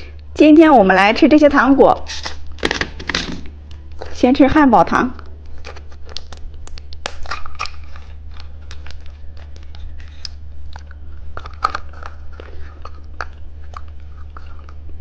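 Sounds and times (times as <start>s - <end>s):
plastic wrapper crinkling: 5.4s - 14.8s.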